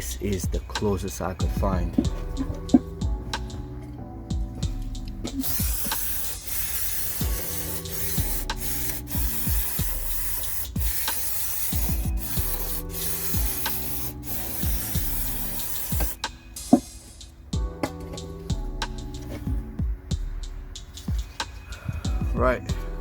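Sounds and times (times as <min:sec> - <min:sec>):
background music: 0:00.0 - 0:23.0
pressurised spray hissing: 0:05.3 - 0:17.1.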